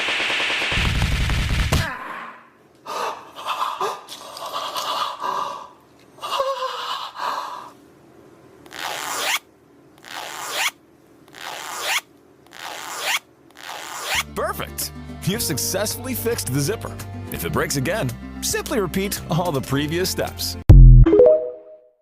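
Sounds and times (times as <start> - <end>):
zipper zipping: 8.7 - 14.2.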